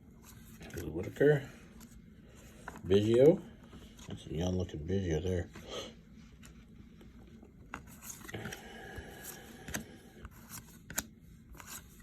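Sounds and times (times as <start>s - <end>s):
cards sliding on cards: 5.5s - 12.0s.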